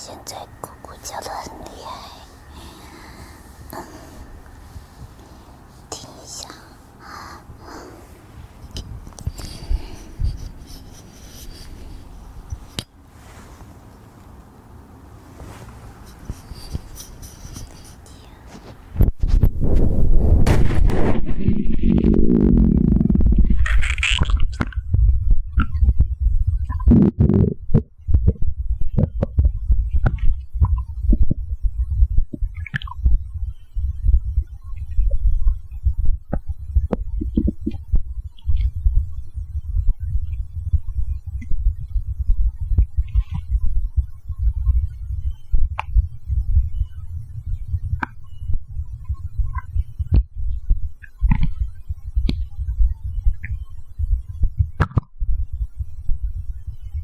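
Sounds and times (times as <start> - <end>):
stomach gurgling and growling: 18.6 - 57.0.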